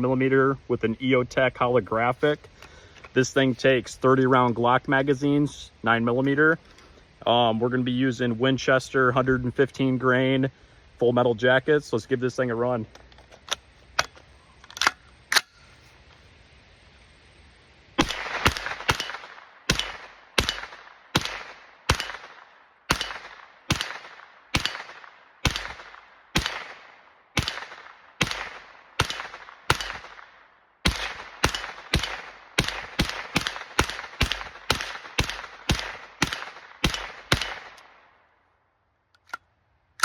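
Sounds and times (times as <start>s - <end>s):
rifle gunshots with ringing tail: 18.0s - 38.2s.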